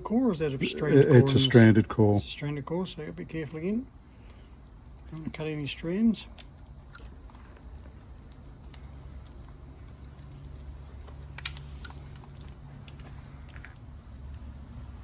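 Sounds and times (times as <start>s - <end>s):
crickets chirring: 0.0s - 15.0s
small clicks: 11.0s - 13.7s.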